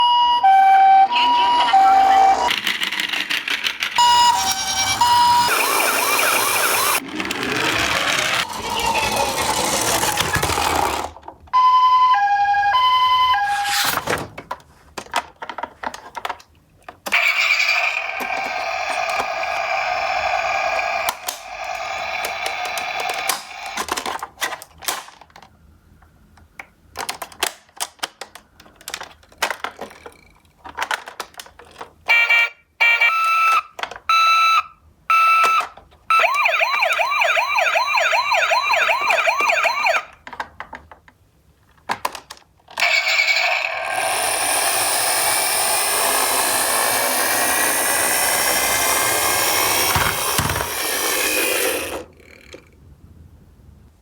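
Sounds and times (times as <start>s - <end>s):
fast warbling siren: 0.0s - 2.5s, 4.0s - 7.0s, 12.1s - 14.0s, 36.1s - 40.1s
toy two-tone siren: 0.0s - 2.5s, 4.0s - 7.0s, 11.6s - 13.9s, 32.1s - 40.1s
toy cars rolling down a slope: 1.2s - 11.3s, 17.1s - 25.1s, 41.8s - 52.8s
plastic clicks and clatter: 14.4s - 17.2s, 22.2s - 32.1s, 40.1s - 42.9s.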